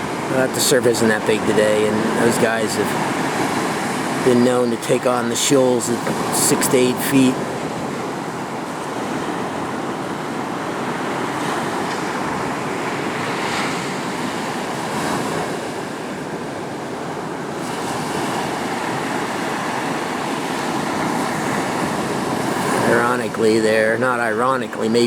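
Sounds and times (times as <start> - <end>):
ocean surf breaking: 0.0 - 25.0.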